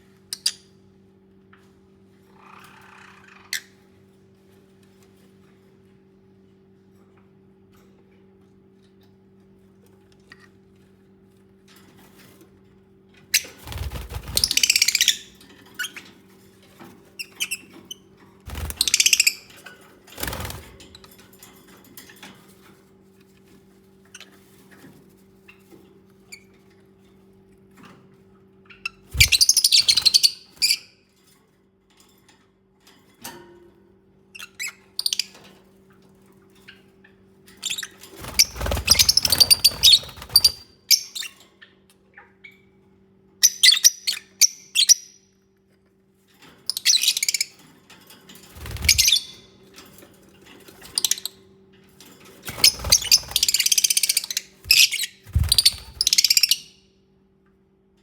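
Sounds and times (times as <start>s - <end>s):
birds chirping and squawking: 2.3s - 3.8s, 13.4s - 16.1s, 18.5s - 19.6s, 28.8s - 30.8s, 37.6s - 41.4s, 48.5s - 49.6s, 52.5s - 56.8s.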